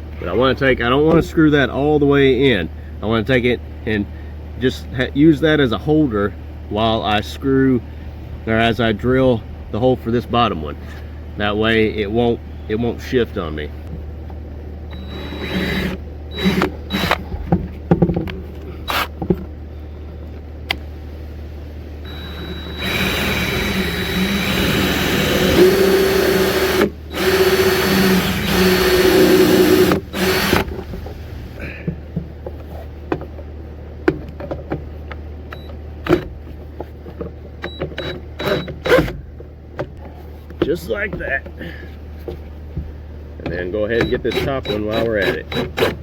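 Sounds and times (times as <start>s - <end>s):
power drill boring: 14.9s - 17.2s, 22.1s - 31.6s, 38.0s - 39.1s, 43.9s - 46.0s.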